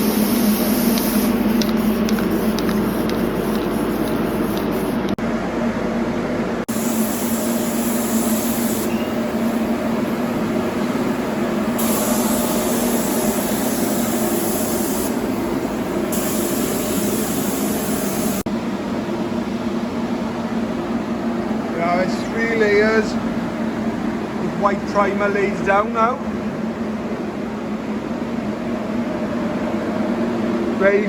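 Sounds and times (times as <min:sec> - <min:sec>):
spray gun hissing: 0:00.0 - 0:05.2, 0:06.7 - 0:18.5
ventilation fan drone: 0:00.0 - 0:31.0.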